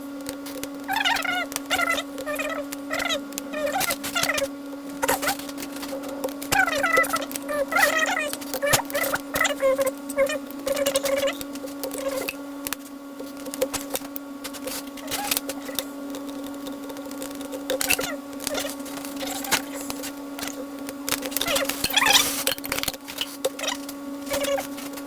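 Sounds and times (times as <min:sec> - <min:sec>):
electrical hum: 0:00.0 - 0:25.0
faint wavering pitched sounds: 0:00.9 - 0:12.4.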